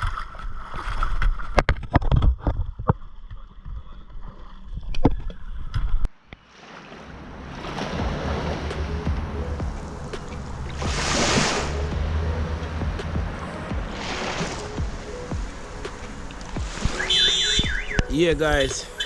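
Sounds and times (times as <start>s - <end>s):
rushing surf and wind: 6.5s - 19.0s.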